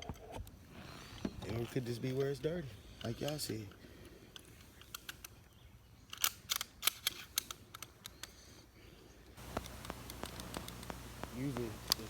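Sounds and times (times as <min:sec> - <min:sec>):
pistol action clicking: 0:06.1 - 0:08.4, 0:09.4 - 0:12.0.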